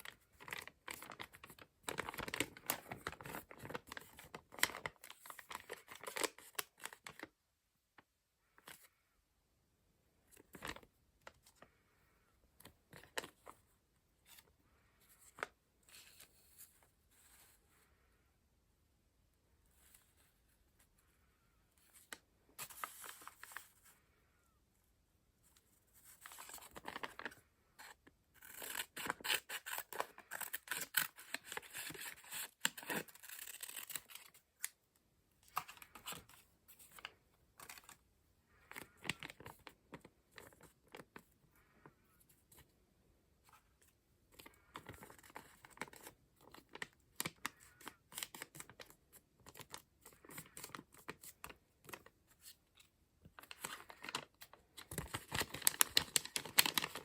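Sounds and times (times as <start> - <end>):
paper rustling: 0.1 - 7.3, 21.8 - 24.0, 25.4 - 34.7, 43.5 - 57.0
scissors snipping paper: 28.4 - 34.3.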